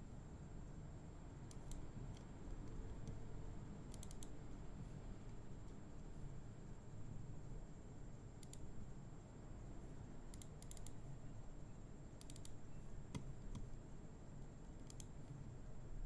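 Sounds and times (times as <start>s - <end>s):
low room hum: 0.0s - 16.0s
computer mouse clicks: 1.5s - 3.3s, 3.9s - 4.4s, 8.4s - 8.7s, 10.3s - 11.0s, 12.2s - 13.8s, 14.8s - 15.4s.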